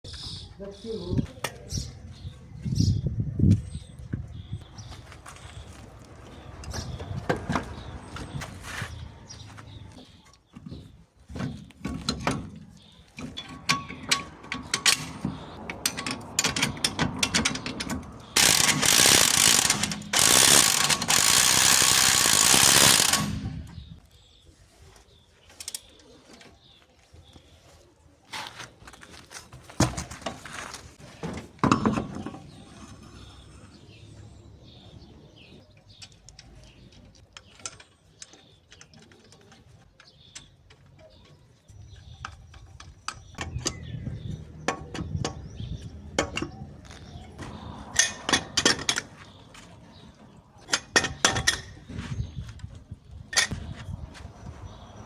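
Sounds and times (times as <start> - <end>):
hand tools clinking on metal: 13.2 - 23.4, 46.2 - 49.7.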